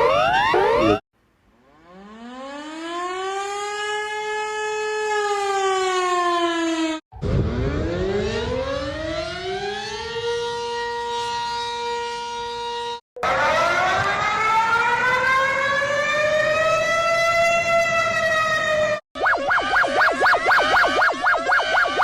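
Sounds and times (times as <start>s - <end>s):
civil defense siren wailing: 0.0s - 1.0s, 1.6s - 22.0s
second siren tone: 5.4s - 22.0s.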